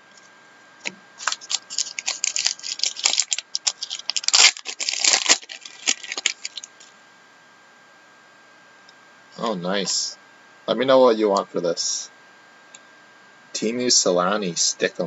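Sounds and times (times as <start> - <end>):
card packaging crinkling and tearing: 1.2 - 6.9.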